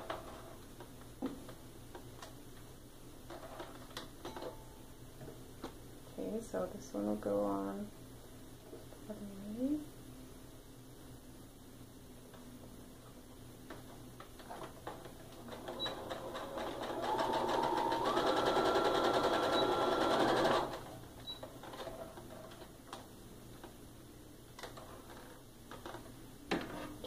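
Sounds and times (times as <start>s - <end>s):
sewing machine stitching: 15.3s - 21.0s.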